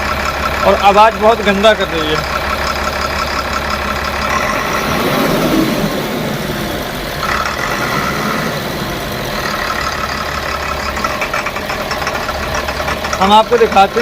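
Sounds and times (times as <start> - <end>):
diesel engine running rough: 0.0 - 14.0
engine rattling knock: 0.0 - 14.0.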